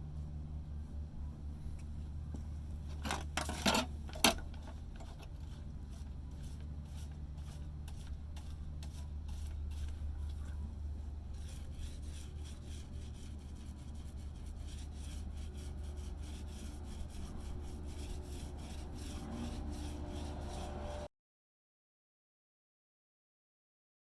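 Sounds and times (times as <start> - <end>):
steady low hum: 0.0 - 21.1
hand sanding wood: 5.4 - 10.6, 11.3 - 21.1.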